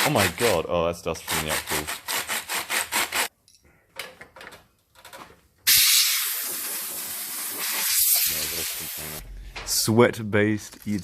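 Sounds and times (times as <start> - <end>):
brush scrubbing: 1.2 - 3.3
air hose blowing compressed air: 5.7 - 9.2.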